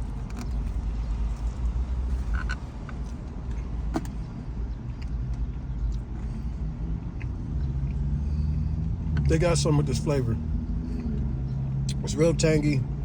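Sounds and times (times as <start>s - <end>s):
person chewing food: 0.0s - 9.3s.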